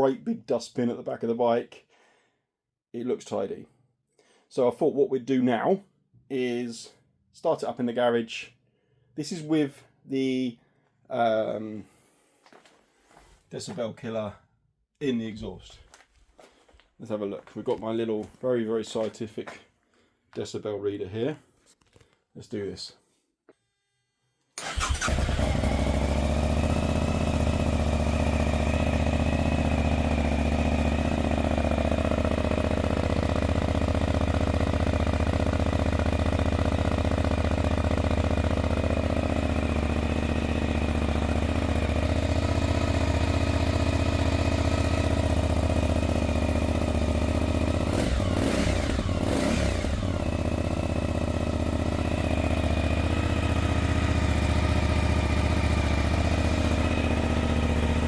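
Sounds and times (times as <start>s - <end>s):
motorcycle engine idling loudly: 24.6s - 58.0s.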